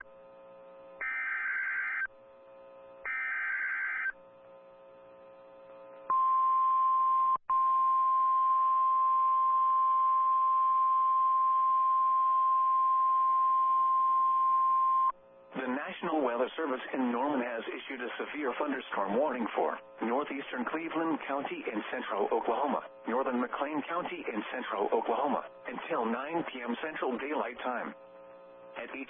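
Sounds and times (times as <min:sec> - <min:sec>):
screeching digital data bursts: 0:01.0 - 0:02.1, 0:03.1 - 0:04.1
steady warning alarm tone: 0:01.0 - 0:02.1, 0:03.0 - 0:04.2.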